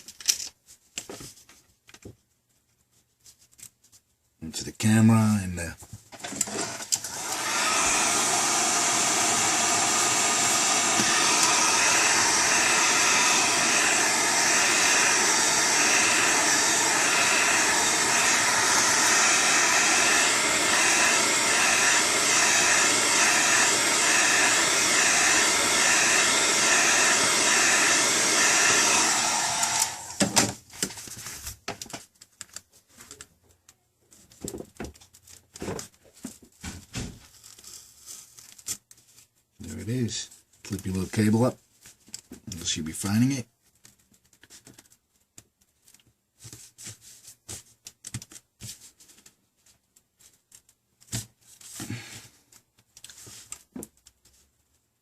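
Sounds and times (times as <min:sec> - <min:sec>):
hot-air blower running: 0:06.2 - 0:30.5.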